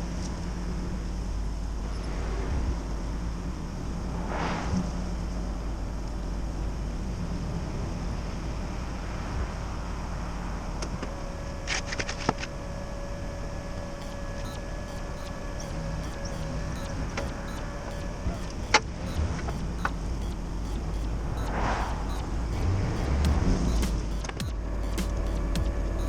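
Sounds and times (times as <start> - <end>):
sharp clicks: 14.0 - 26.0.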